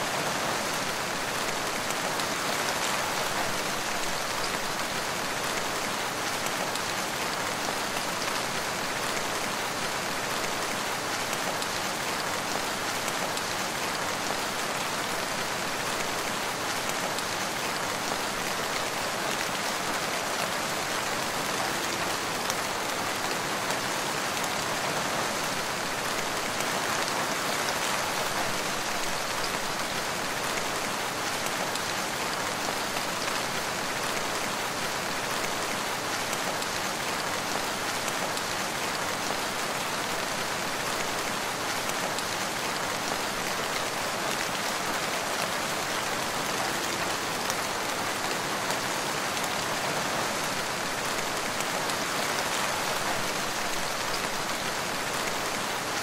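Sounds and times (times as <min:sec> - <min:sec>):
rain falling on leaves: 0:00.0 - 0:56.0.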